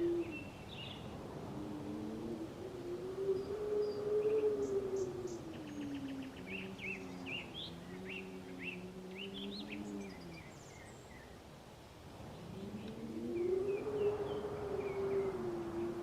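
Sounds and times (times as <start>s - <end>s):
small birds chirping: 4.7s - 11.4s.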